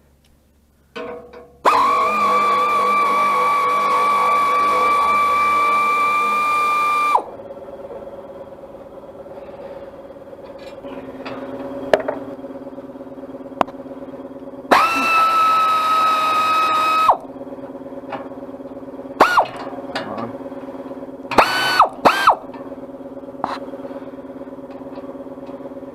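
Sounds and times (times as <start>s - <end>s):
faint steady hum: 0.0s - 25.9s
power drill whining: 1.6s - 7.4s, 14.7s - 17.3s, 19.2s - 19.6s, 21.3s - 22.5s.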